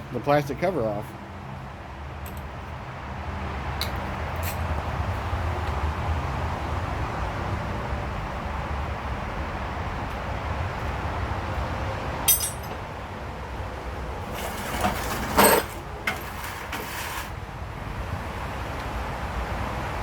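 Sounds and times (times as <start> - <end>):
hand tools clinking and scraping: 12.3 - 12.8, 14.2 - 17.4.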